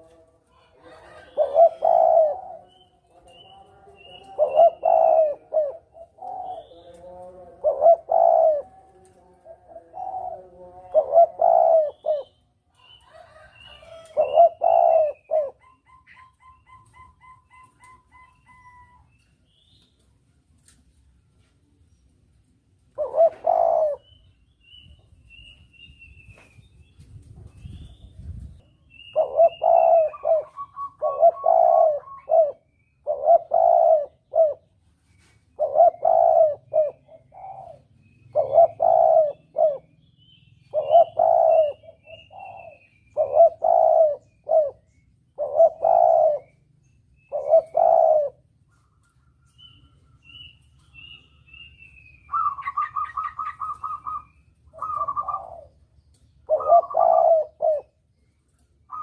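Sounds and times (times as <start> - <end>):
dove cooing: 0.0 - 19.2, 22.9 - 24.3, 28.9 - 34.8, 35.5 - 40.1, 40.7 - 58.1
small bird chirping: 48.7 - 57.2.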